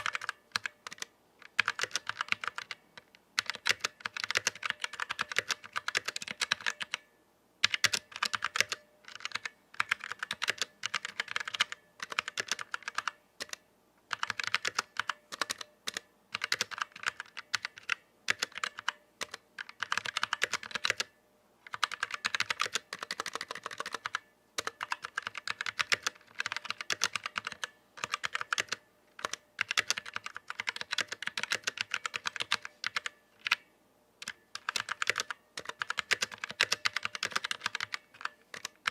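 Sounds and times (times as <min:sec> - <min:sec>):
mechanical keyboard key clacks: 0:34.2 - 0:38.9.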